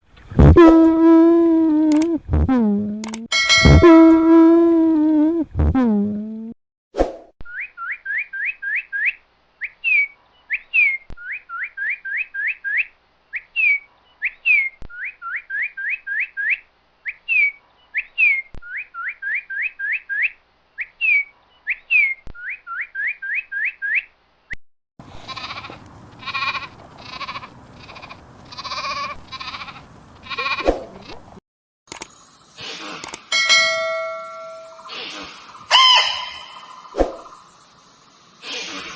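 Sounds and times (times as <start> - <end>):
sharp click: 3.0 - 3.3, 31.9 - 32.2, 33.0 - 33.3
repeated bleating calls: 25.1 - 31.2
short rising whistled chirps: 33.5 - 38.9.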